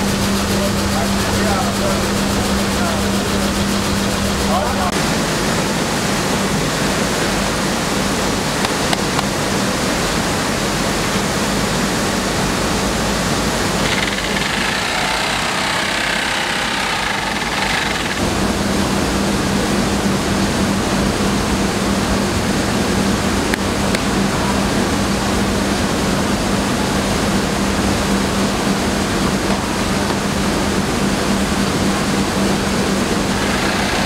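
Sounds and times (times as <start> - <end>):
higher bright rushing: 0.0 - 5.4
machinery low hum: 0.0 - 34.0
mill machinery rushing: 0.0 - 34.0.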